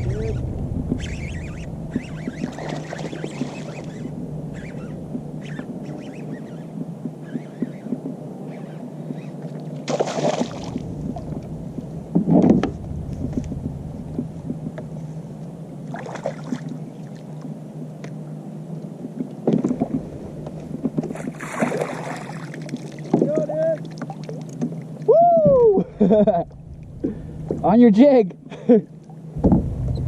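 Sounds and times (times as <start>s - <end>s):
boat engine low hum: 0.0s - 30.0s
knocks and splashing: 9.8s - 15.0s, 19.4s - 24.8s.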